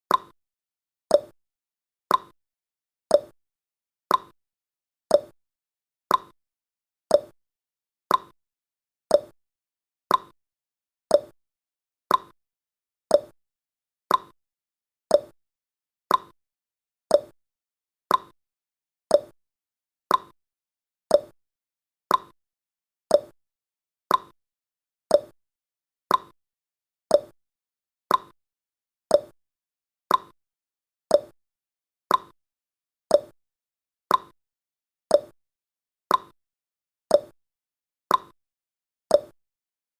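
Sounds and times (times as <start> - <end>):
clock-like ticking: 0.1 - 0.3, 1.1 - 1.3, 2.1 - 2.3, 3.1 - 3.3, 4.1 - 4.3, 5.1 - 5.3, 6.1 - 6.4, 7.1 - 7.4, 8.1 - 8.4, 9.1 - 9.4, 10.1 - 10.4, 11.1 - 11.4, 12.1 - 12.4, 13.1 - 13.4, 14.1 - 14.4, 15.1 - 15.4, 16.1 - 16.4, 17.1 - 17.3, 18.1 - 18.4, 19.1 - 19.4, 20.1 - 20.4, 21.1 - 21.4, 22.1 - 22.4, 23.1 - 23.4, 24.1 - 24.4, 25.1 - 25.3, 26.1 - 26.4, 27.1 - 27.4, 28.1 - 28.4, 29.1 - 29.4, 30.1 - 30.4, 31.1 - 31.4, 32.1 - 32.4, 33.1 - 33.4, 34.1 - 34.4, 35.1 - 35.4, 36.1 - 36.4, 37.1 - 37.4, 38.1 - 38.4, 39.1 - 39.4.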